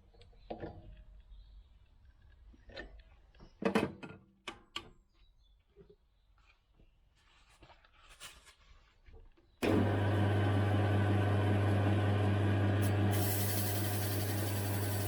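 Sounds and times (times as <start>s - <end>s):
electric lathe humming: 9.6s - 15.0s.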